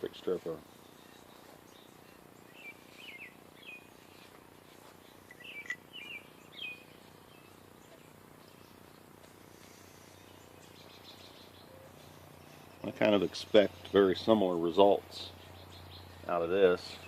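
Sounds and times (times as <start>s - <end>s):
low background noise: 0.0s - 17.0s
faint bird chirps: 0.6s - 14.1s.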